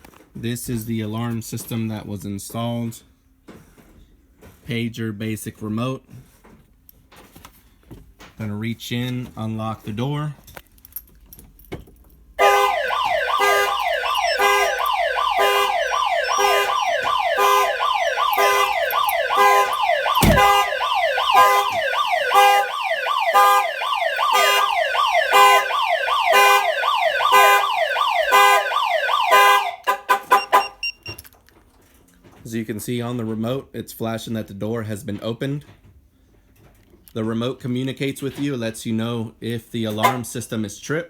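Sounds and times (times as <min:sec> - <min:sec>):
car alarm siren: 0:12.4 - 0:31.2
low thump: 0:20.1 - 0:20.7.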